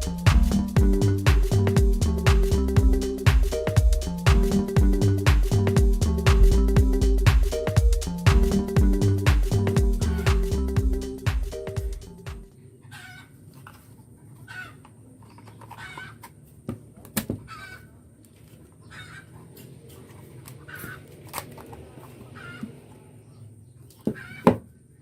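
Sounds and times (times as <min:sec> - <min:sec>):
chickens clucking: 0:12.6 - 0:16.5, 0:17.4 - 0:24.8.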